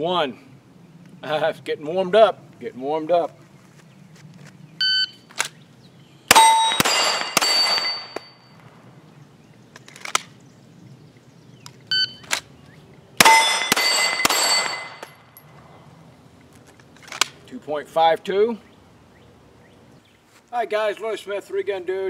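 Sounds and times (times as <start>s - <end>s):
pistol shots: 6.3s - 8.4s, 13.2s - 15.2s
steel target ringing: 6.3s - 8.7s, 13.2s - 15.4s
shot timer beep: 11.9s - 12.2s.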